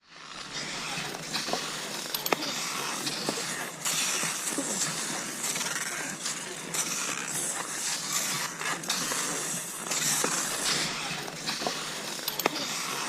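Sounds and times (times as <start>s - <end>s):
skis swishing over snow: 0.1s - 13.0s.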